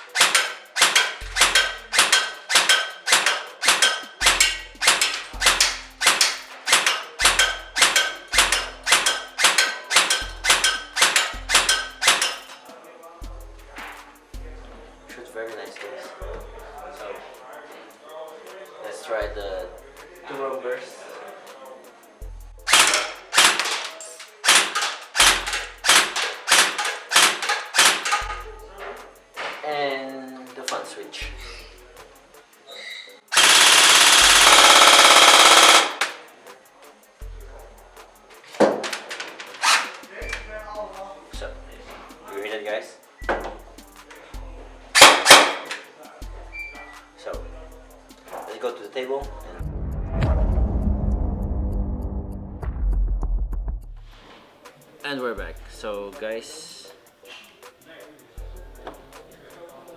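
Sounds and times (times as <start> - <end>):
airsoft gun shots cracking: 0.1 - 12.5, 22.7 - 28.4, 33.4 - 36.2, 45.0 - 45.7
bass pulse background music: 1.2 - 2.0, 4.2 - 6.3, 7.2 - 9.4, 10.2 - 12.1, 13.2 - 15.3, 16.2 - 17.1, 19.2 - 20.2, 22.2 - 22.8, 28.2 - 29.4, 31.2 - 32.4, 37.2 - 38.3, 40.2 - 42.3, 43.2 - 45.0, 46.2 - 48.3, 49.2 - 54.2, 55.4 - 56.3, 58.4 - 59.3.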